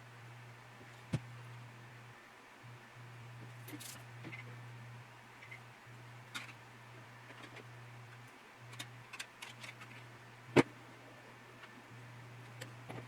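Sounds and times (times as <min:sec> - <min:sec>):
steady low hum: 0:00.0 - 0:13.0
plastic parts clicking and tapping: 0:08.7 - 0:10.0.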